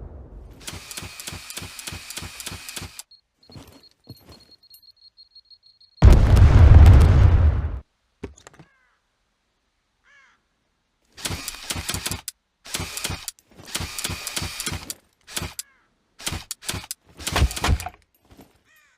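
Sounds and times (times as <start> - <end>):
crossbow mechanical clacks and twangs: 11.2 - 18.1.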